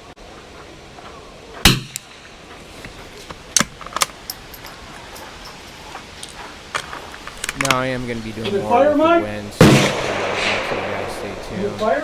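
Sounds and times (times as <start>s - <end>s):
rifle shot: 1.7s - 2.1s, 9.6s - 12.0s.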